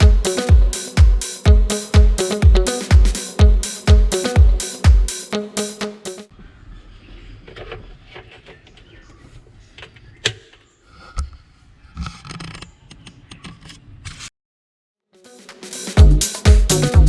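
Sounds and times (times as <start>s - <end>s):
music: 0.0s - 6.3s, 15.2s - 17.0s.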